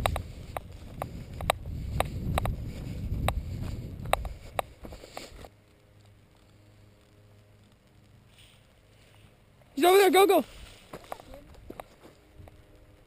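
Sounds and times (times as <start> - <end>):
wind on microphone: 0.0 - 5.0.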